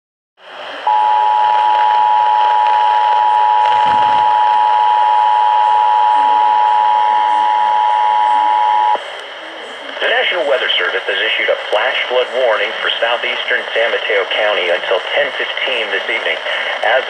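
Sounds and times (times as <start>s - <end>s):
radio static hiss: 0.4s - 17.0s
harsh two-tone attention signal: 0.9s - 9.0s.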